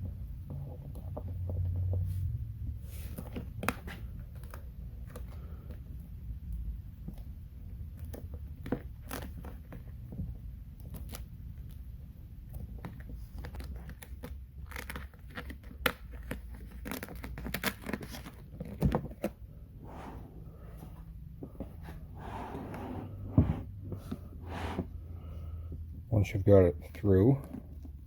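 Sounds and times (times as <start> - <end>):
vinyl film crinkling and crackling: 6.5 - 19.5.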